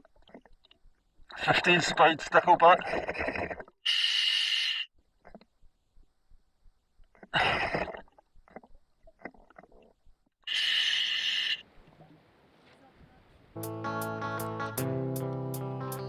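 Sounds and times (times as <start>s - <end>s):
guitar music: 13.6s - 16.0s.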